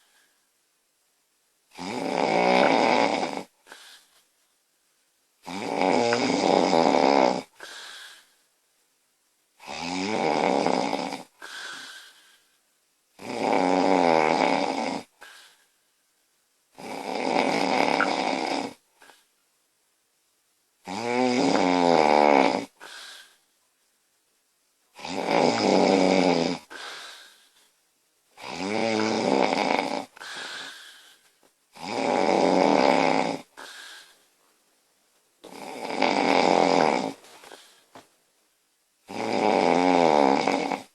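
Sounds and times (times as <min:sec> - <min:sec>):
woman snoring: 0:01.7 - 0:04.0, 0:05.4 - 0:08.3, 0:09.6 - 0:12.2, 0:13.2 - 0:15.3, 0:16.8 - 0:18.8, 0:20.8 - 0:23.4, 0:25.0 - 0:27.4, 0:28.4 - 0:31.0, 0:31.7 - 0:34.1, 0:35.4 - 0:37.6, 0:39.0 - 0:40.9
woman breathing: 0:26.6 - 0:27.7, 0:30.2 - 0:31.4.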